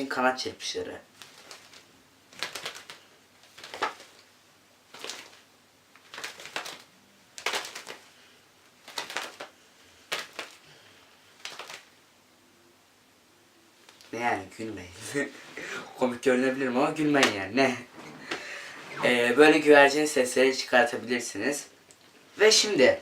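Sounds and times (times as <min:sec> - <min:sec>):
leather gloves flapping: 0:01.2 - 0:04.2, 0:04.9 - 0:05.4, 0:06.0 - 0:08.1, 0:08.8 - 0:10.6.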